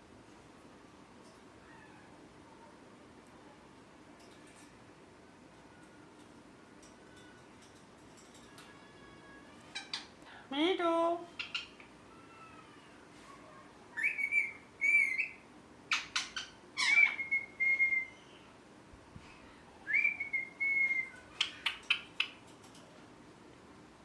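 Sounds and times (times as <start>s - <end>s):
parrot chirping: 9.7s - 10.2s, 11.3s - 11.9s, 13.9s - 18.2s, 20.0s - 22.5s
parrot whistling: 14.0s - 16.2s, 16.8s - 18.2s, 19.9s - 21.2s.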